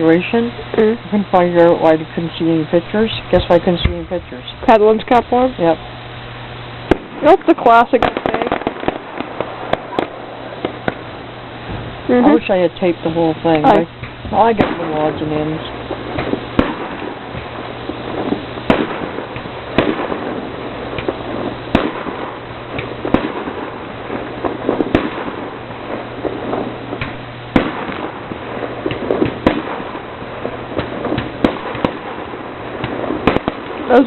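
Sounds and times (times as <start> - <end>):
firework shells bursting: 0.0 - 34.0
fireworks crackling: 0.0 - 34.0.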